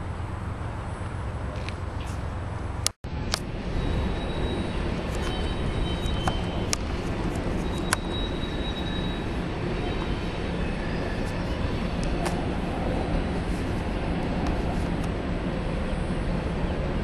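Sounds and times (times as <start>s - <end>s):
train wheels rumbling on rails: 0.0s - 17.0s
faint high squeal: 3.7s - 6.7s, 7.6s - 12.3s
sharp rail clicks: 4.9s - 10.2s.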